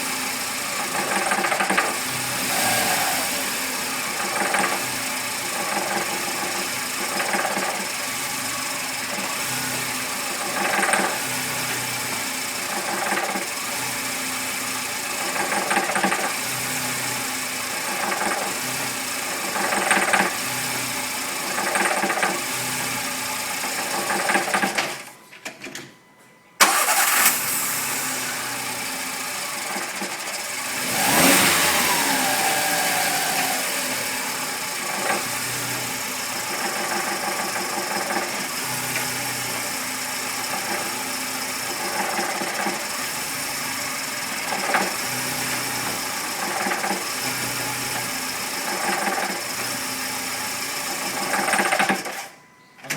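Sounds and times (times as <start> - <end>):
car engine running: 0.0 - 24.4, 26.6 - 51.8
chirping engine noise: 30.6 - 37.8.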